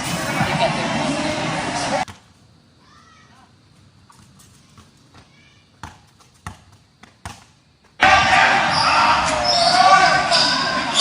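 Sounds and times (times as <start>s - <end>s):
basketball bouncing on hard court: 4.8s - 7.5s.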